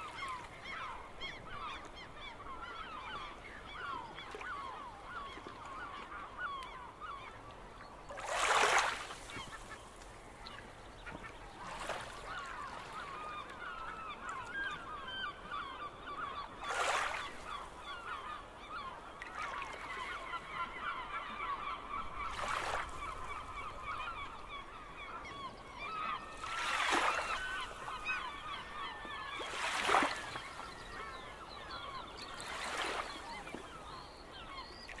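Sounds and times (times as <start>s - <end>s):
gulls calling: 8.2s - 35.0s.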